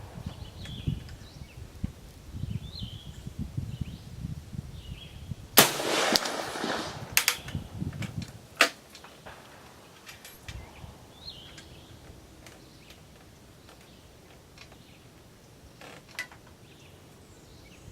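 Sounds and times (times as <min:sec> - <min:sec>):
rifle shot with echo: 0:05.6 - 0:07.6, 0:09.2 - 0:10.1.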